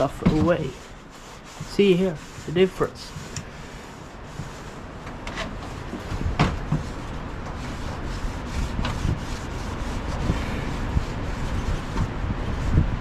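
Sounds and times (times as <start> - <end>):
scrubbing on metal: 0.0 - 12.8
sharp knocks: 6.0 - 6.9.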